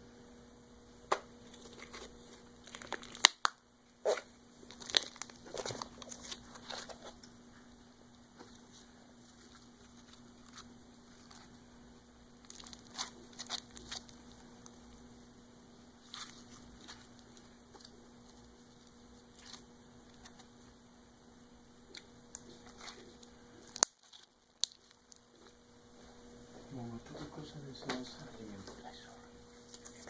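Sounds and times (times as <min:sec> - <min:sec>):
low steady hum: 0:00.0 - 0:30.0
slime crackling and popping: 0:02.6 - 0:07.0, 0:12.3 - 0:15.1, 0:21.9 - 0:25.4.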